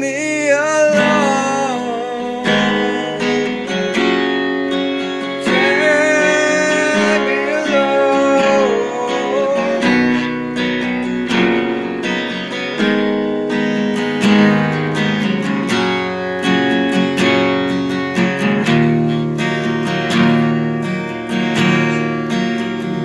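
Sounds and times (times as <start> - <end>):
person singing: 0.0 - 11.1
acoustic guitar strumming: 0.0 - 23.0.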